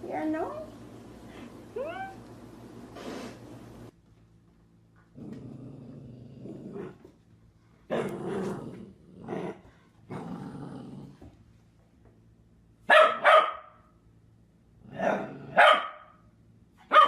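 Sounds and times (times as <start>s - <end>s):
dog growling: 5.1s - 7.1s, 7.9s - 11.2s.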